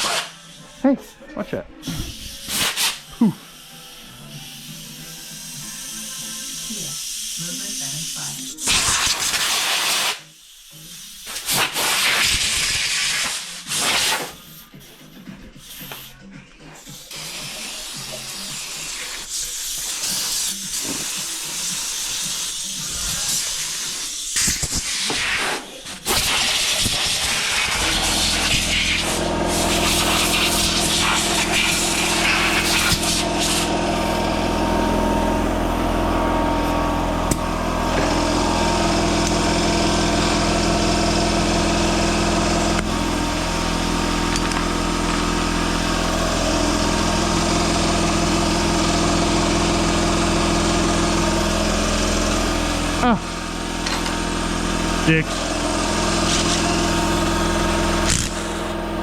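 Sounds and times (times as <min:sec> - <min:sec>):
compressed air blow gun hissing: 0:01.8 - 0:16.2, 0:16.8 - 0:34.2
air compressor motor droning: 0:14.3 - 0:59.0.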